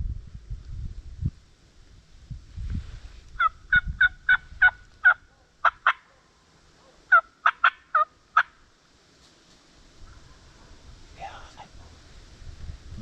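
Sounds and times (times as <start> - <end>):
turkey yelping: 3.4 - 6.2, 6.8 - 8.6.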